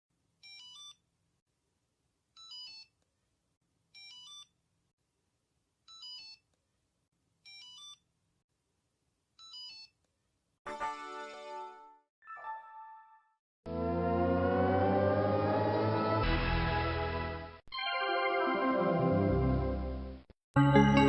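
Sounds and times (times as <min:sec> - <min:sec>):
synthesized startup chord: 0:13.7 - 0:21.0.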